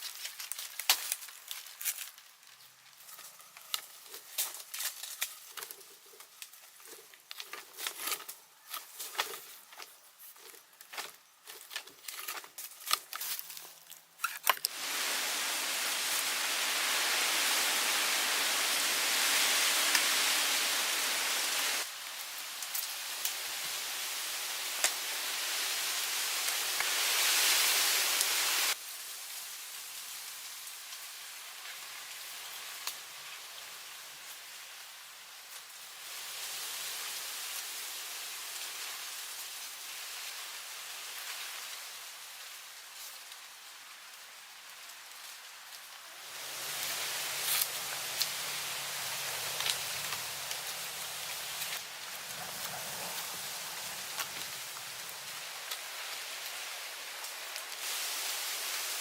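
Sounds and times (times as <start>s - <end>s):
twigs and dry leaves crackling: 0.0s - 15.0s, 21.8s - 27.0s, 28.7s - 58.1s
rain hissing: 14.6s - 33.7s, 35.4s - 42.1s, 42.9s - 59.0s.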